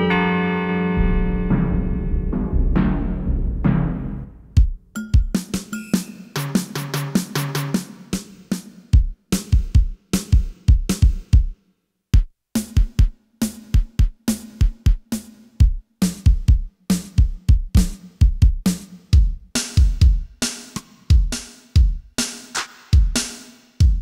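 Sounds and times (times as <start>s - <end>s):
keyboard drum beat: 1.0s - 11.6s, 12.2s - 24.0s.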